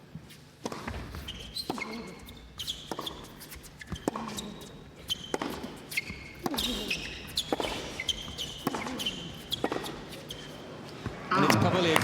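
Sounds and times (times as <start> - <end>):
sneakers squeaking: 0.1 - 12.0
racket striking tennis ball: 2.8 - 10.6.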